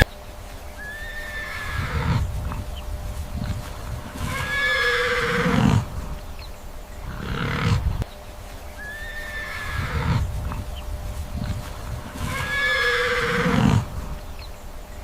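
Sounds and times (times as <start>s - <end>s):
horse whinnying: 0.8s - 2.6s, 3.9s - 6.0s, 7.0s - 8.0s, 8.8s - 10.6s, 11.5s - 14.1s.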